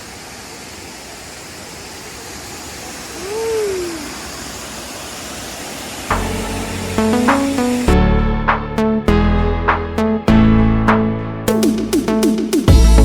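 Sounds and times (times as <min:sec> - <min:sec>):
waterfall rushing water: 0:00.0 - 0:07.9.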